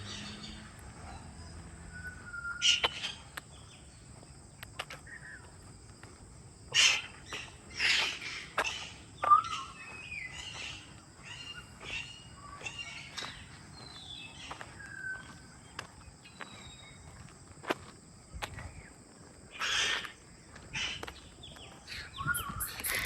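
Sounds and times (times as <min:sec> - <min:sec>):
harsh bird calls: 0:00.0 - 0:05.6, 0:06.7 - 0:17.2, 0:19.5 - 0:23.0
whistled bird chirps: 0:01.9 - 0:03.2, 0:09.2 - 0:10.5, 0:21.9 - 0:23.0.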